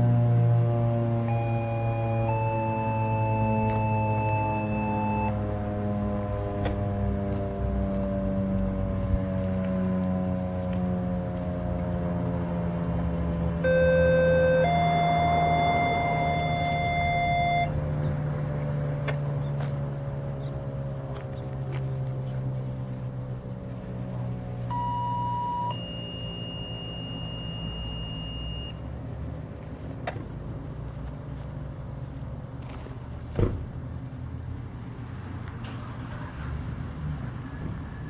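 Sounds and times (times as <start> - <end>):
warning siren winding down: 0.0 - 18.0, 24.6 - 28.8
electronic beep: 1.3 - 5.4, 13.6 - 17.8, 24.7 - 28.8
thump: 33.3 - 33.7.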